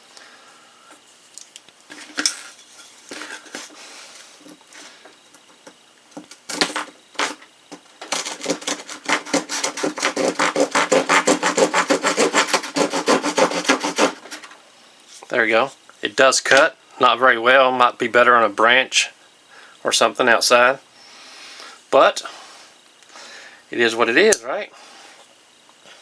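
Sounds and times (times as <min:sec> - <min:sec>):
small saw sawing wood: 0:08.0 - 0:14.5.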